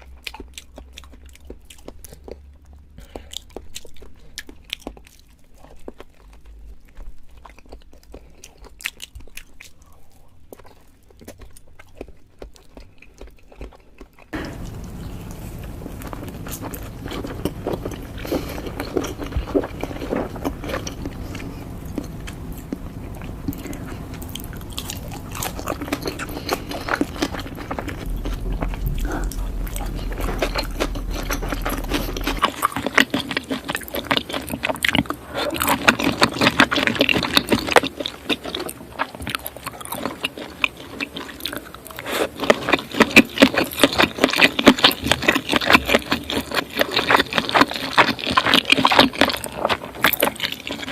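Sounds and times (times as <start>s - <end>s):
chewing and biting food: 0.0s - 50.9s.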